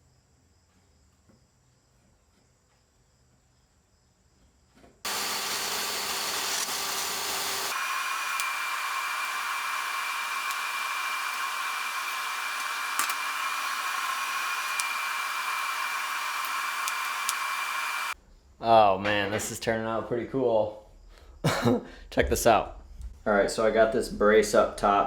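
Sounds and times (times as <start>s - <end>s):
metalworking power tool hissing: 5.1s - 18.2s
steady whine: 5.1s - 18.2s
sharp clicks: 7.6s - 18.2s.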